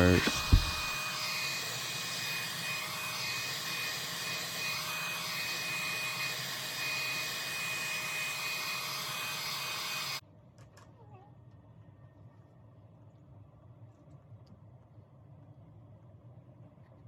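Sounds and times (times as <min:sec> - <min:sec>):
hair dryer blowing: 0:00.0 - 0:10.2.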